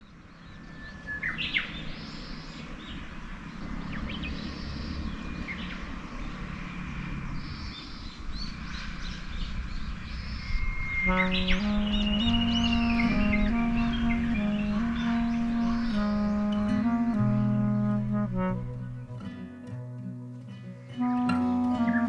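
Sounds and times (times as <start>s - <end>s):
higher bird notes: 11.1s - 22.0s.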